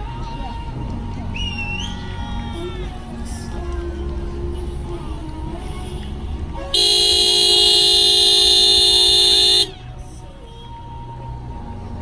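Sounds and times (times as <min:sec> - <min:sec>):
loud horn blast: 0:06.7 - 0:09.8.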